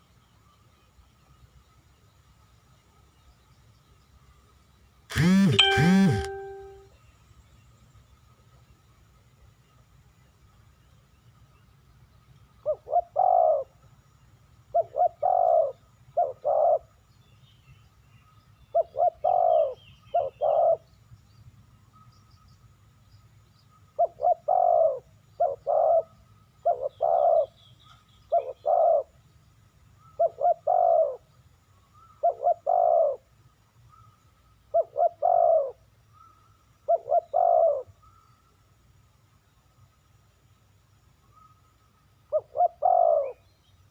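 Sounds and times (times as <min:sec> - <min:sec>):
small birds chirping: 0:00.0 - 0:43.9
dove cooing: 0:12.7 - 0:13.7, 0:14.7 - 0:16.9, 0:18.8 - 0:20.8, 0:24.0 - 0:27.5, 0:28.3 - 0:29.1, 0:30.1 - 0:31.2, 0:32.2 - 0:33.3, 0:34.7 - 0:35.8, 0:36.9 - 0:37.9, 0:42.3 - 0:43.4.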